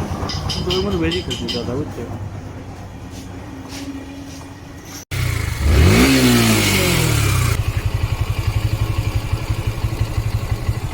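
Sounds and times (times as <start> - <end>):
motorcycle engine revving and idling: 5.1 - 10.9.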